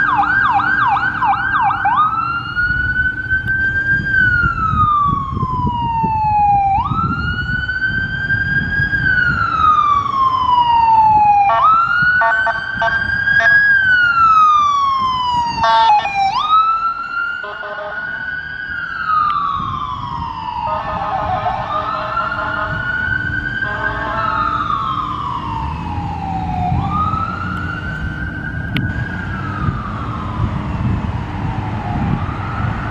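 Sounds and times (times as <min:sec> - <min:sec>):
ambulance siren wailing: 0:00.0 - 0:32.9
horn honks: 0:17.4 - 0:18.0, 0:20.7 - 0:22.9, 0:23.6 - 0:24.6.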